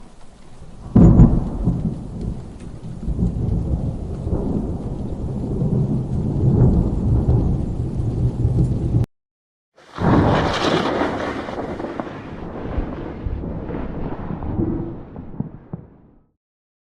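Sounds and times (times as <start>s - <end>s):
rain falling: 0.0s - 9.1s, 9.8s - 14.1s
thunder crack and rumble: 0.6s - 9.1s, 9.8s - 16.3s.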